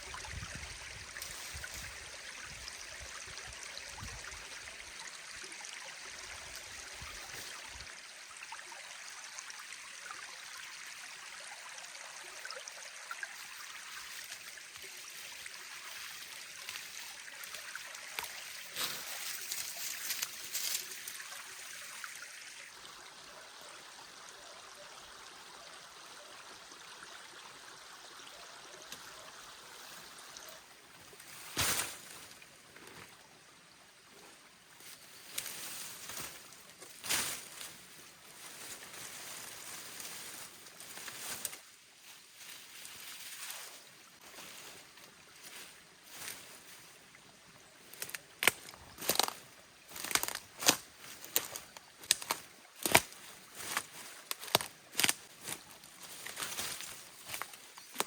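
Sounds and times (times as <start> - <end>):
stream running over stones: 0.0 - 58.0.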